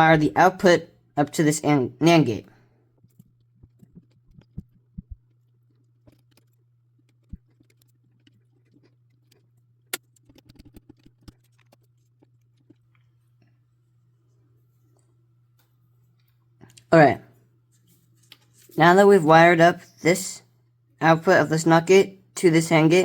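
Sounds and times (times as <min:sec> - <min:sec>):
wires clicking and rattling: 0:03.0 - 0:13.5, 0:17.7 - 0:18.8.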